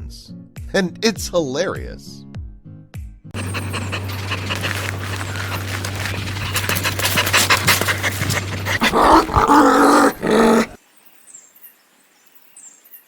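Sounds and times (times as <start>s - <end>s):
dog panting: 3.4s - 10.8s
dog vocalizing: 3.4s - 10.8s.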